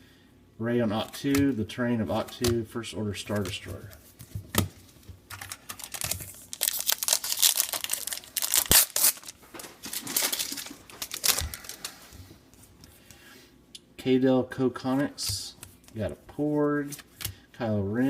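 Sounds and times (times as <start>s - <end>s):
foil wrapper crinkling and tearing: 5.4s - 12.0s.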